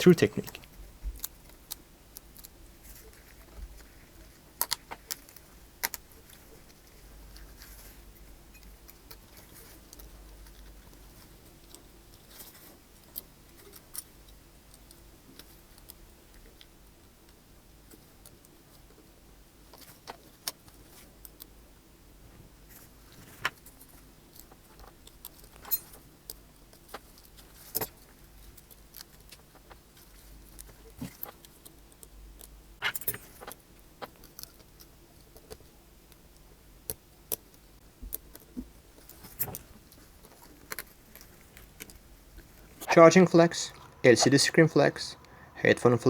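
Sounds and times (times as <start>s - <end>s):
small clicks and taps: 4.6s - 7.8s, 23.2s - 42.5s.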